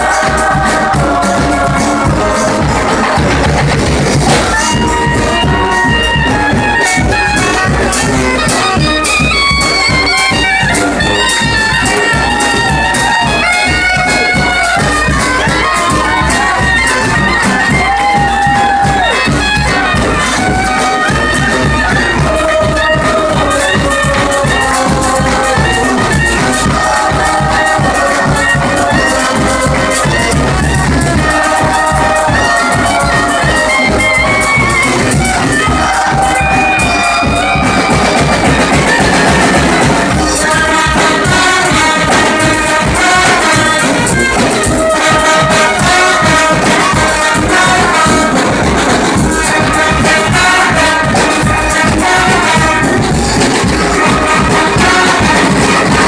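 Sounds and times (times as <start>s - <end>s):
brass band playing: 0.0s - 56.0s
drum and percussion beat: 0.0s - 56.0s.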